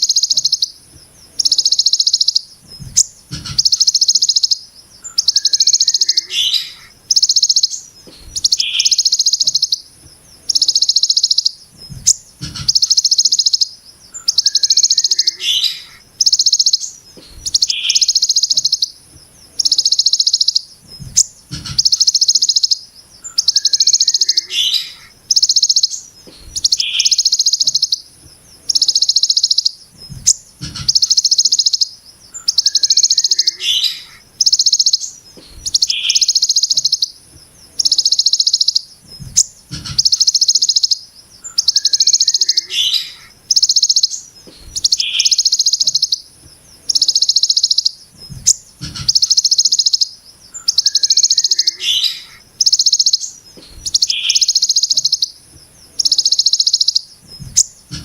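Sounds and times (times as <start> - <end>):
bird buzzy rattle calls: 0.0 - 58.0
bird chirps: 0.0 - 58.0
dull low thumps: 2.6 - 3.7, 11.7 - 12.8, 20.8 - 21.9, 30.0 - 31.0, 39.0 - 40.1, 48.2 - 49.2, 57.2 - 58.0.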